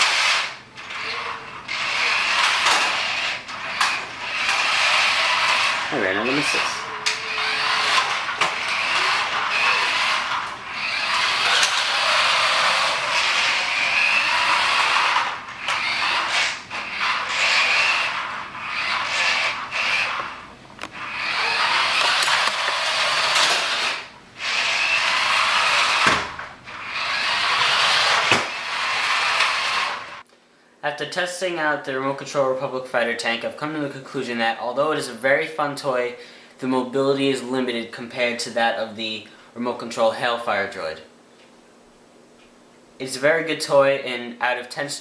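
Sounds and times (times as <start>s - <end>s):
toy electric motor whirring: 0.0s - 30.2s.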